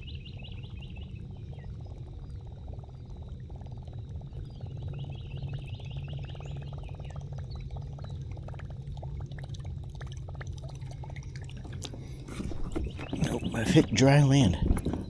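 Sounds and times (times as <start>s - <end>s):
low steady rumble: 0.0s - 15.0s
water trickling and splashing: 0.0s - 15.0s
faint chirps: 12.0s - 15.0s.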